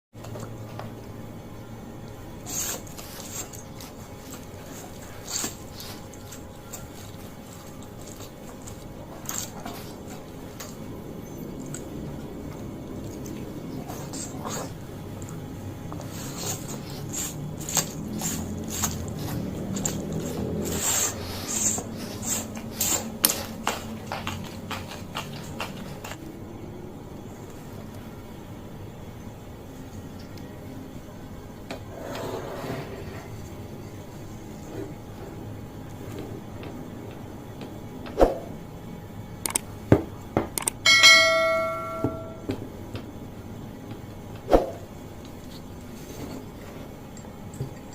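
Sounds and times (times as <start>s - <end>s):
chewing with wet mouth clicks: 11.5s - 16.0s, 16.8s - 20.8s
hissing slurps: 16.0s - 23.6s
ringing tableware clink: 40.9s - 42.5s.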